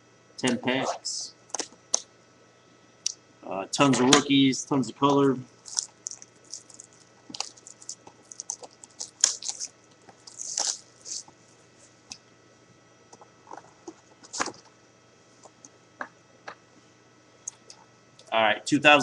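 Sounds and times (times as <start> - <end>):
packaging crinkling and rustling: 5.6 - 11.3, 13.5 - 14.7.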